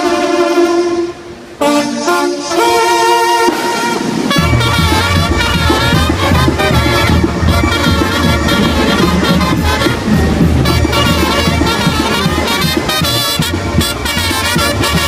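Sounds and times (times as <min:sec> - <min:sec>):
brass band playing: 0:00.0 - 0:15.0
bass and drum rhythm: 0:04.3 - 0:15.0.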